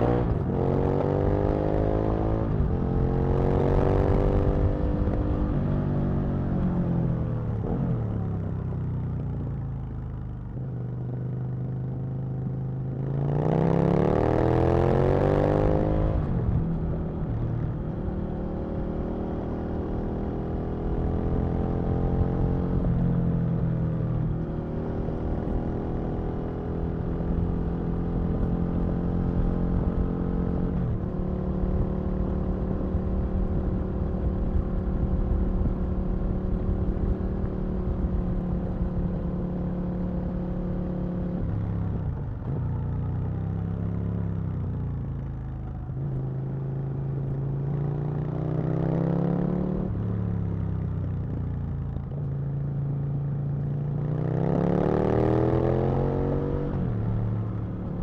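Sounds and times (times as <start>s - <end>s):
motorcycle engine revving: 53.4s - 58.0s.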